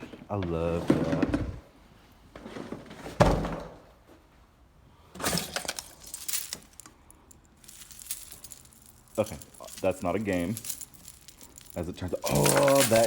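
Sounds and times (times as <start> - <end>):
glassware clinking and rattling: 5.2 - 6.9, 7.7 - 13.0.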